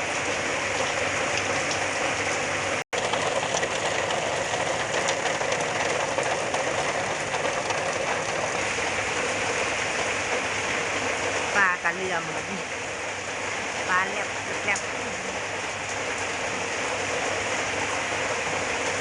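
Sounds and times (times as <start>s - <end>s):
heavy rain pouring: 0.0s - 19.0s.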